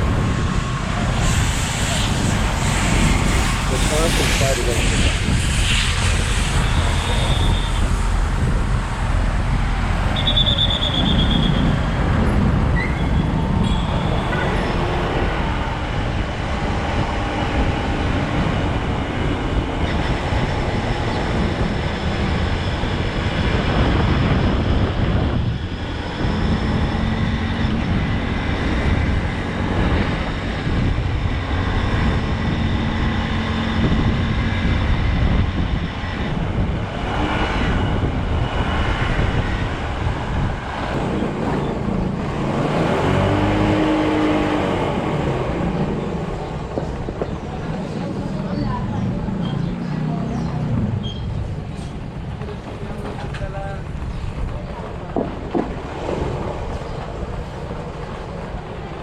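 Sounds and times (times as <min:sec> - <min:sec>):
other vehicles passing: 0:00.0 - 0:59.0
road and wind noise: 0:00.0 - 0:59.0
short high beep: 0:13.6 - 0:14.4.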